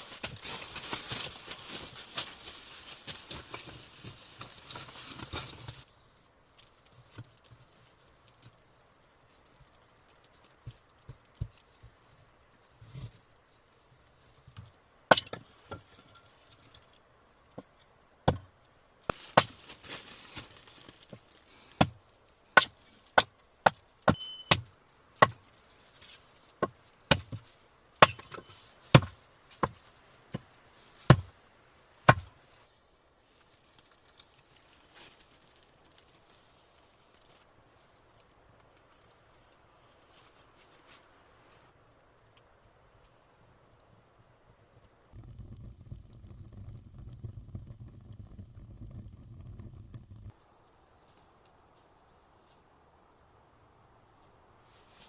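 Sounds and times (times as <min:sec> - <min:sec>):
wood being chopped: 0:14.6 - 0:15.8, 0:18.3 - 0:18.5, 0:19.1 - 0:19.7, 0:21.8 - 0:22.0, 0:22.6 - 0:25.4, 0:26.6 - 0:27.4, 0:28.0 - 0:30.5, 0:31.1 - 0:31.4, 0:32.1 - 0:32.3.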